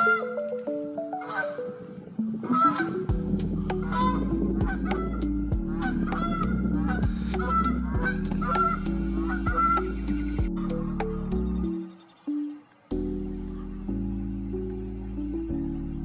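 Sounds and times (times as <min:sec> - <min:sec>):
background music with steady beat: 0:02.6 - 0:16.0.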